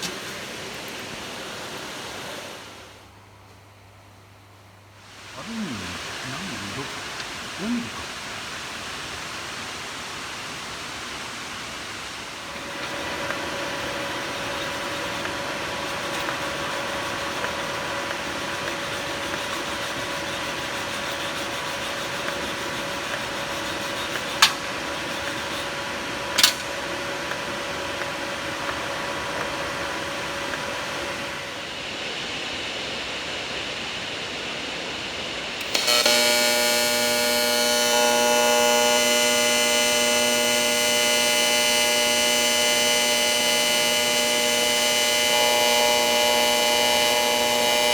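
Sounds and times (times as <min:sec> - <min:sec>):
steady multi-tone buzz: 0:04.8 - 0:08.2, 0:12.3 - 0:32.5, 0:35.5 - 0:47.9
welding arc hissing: 0:05.1 - 0:09.0, 0:12.2 - 0:31.8, 0:35.6 - 0:47.9.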